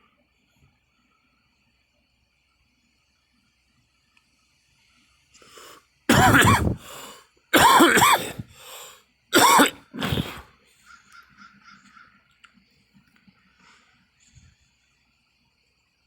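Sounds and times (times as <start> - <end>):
person coughing: 6.1 - 8.5, 9.4 - 10.5.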